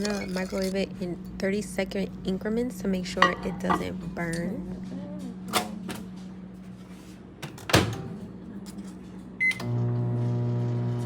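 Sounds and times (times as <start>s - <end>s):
microwave humming: 0.0s - 11.0s.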